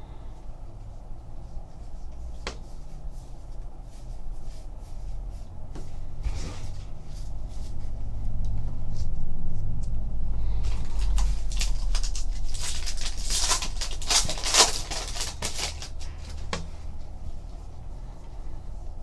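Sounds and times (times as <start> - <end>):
steady low hum: 0.0 - 19.0
card packs crinkling: 10.5 - 16.7.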